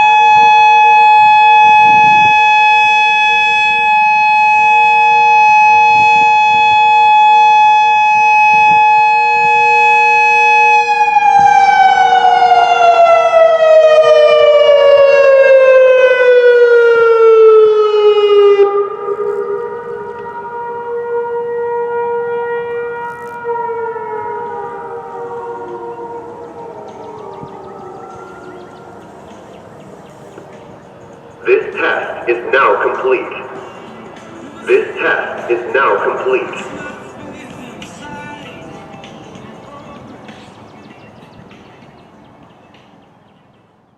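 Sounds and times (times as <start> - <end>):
electronic siren two-tone chord: 0.0 - 33.7
faint distant siren tones: 0.0 - 43.9.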